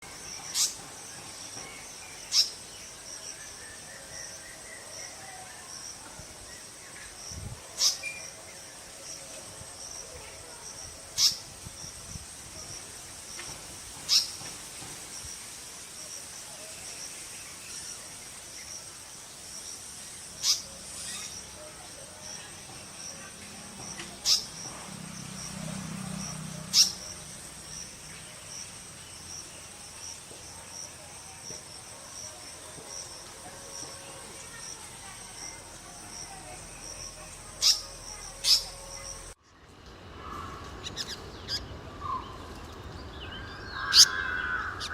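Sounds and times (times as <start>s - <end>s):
insects chirping: 0.0s - 39.4s, 40.1s - 44.9s
distant bird song: 32.5s - 39.4s, 40.1s - 44.9s.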